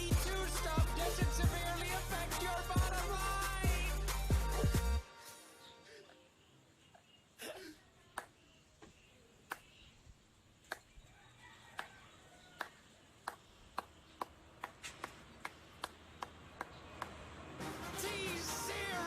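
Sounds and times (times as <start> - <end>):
music: 0.0 - 5.9, 17.5 - 19.0.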